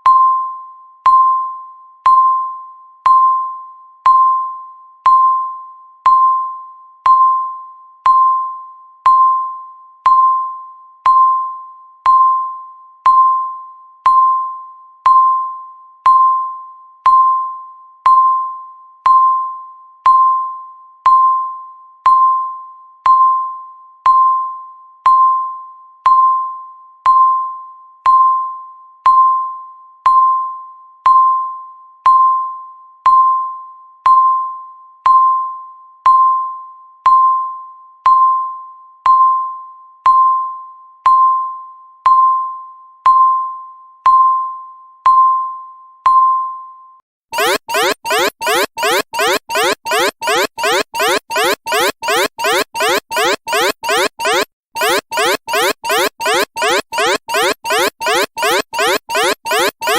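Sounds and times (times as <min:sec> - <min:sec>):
countdown timer beeps: 0:47.4 - 0:59.9.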